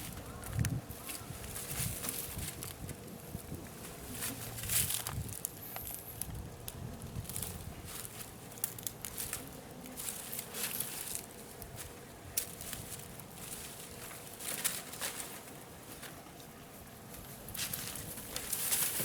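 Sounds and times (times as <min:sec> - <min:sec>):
rustling: 0:07.0 - 0:16.5, 0:17.1 - 0:19.0.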